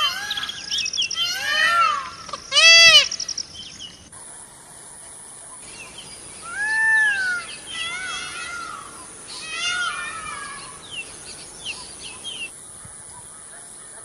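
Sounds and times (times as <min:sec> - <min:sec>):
peacock calling: 0:00.0 - 0:04.1, 0:05.6 - 0:12.5
small birds chirping: 0:00.0 - 0:04.3, 0:05.0 - 0:14.0.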